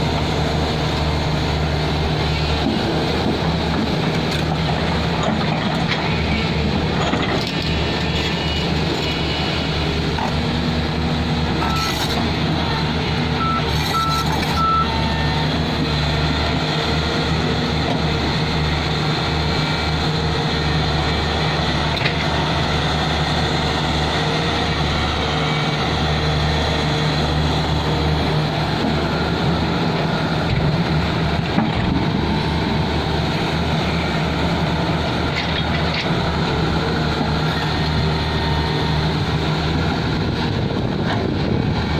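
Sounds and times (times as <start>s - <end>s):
diesel engine humming: 0.0s - 41.9s
short high beeps: 11.7s - 12.0s, 13.4s - 15.3s.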